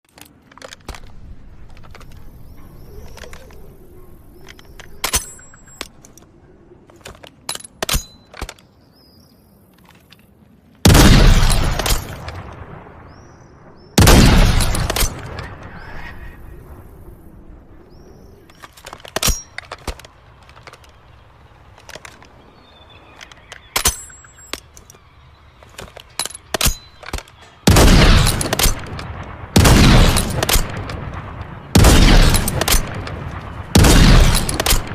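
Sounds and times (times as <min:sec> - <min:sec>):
blunderbuss gunshots: 0:10.9 - 0:13.2, 0:14.0 - 0:16.0, 0:27.6 - 0:34.9.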